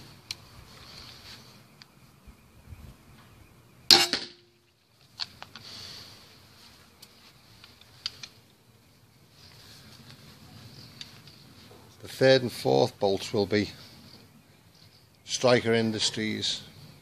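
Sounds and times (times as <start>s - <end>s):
crossbow ringing hum: 3.9s - 4.8s
crossbow string crack: 7.0s - 8.5s
small handling clicks: 7.0s - 8.5s.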